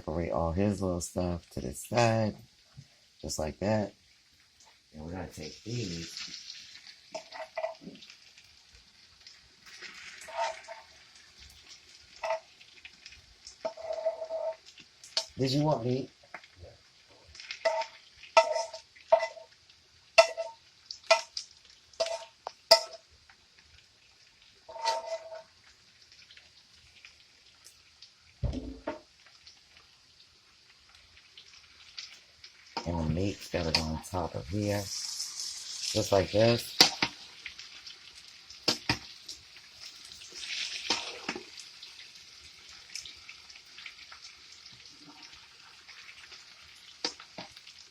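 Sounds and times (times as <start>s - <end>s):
steak sizzling: 0.0s - 47.9s
utensil scraping: 24.7s - 25.5s.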